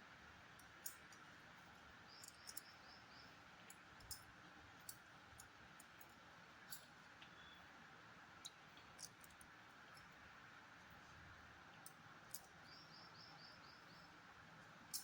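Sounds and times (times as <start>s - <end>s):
small clicks: 8.4s - 10.1s.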